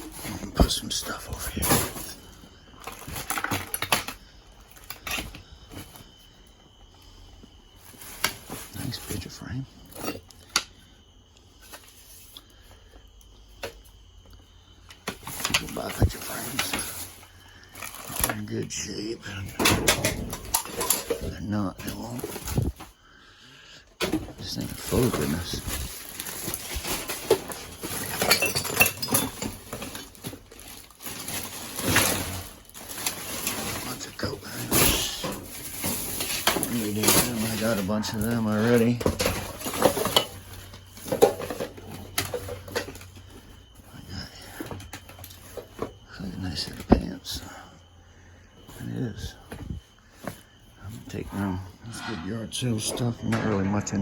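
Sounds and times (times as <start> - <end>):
items clattering in a dumpster: 0.0 - 10.6, 14.9 - 23.0, 23.9 - 47.7.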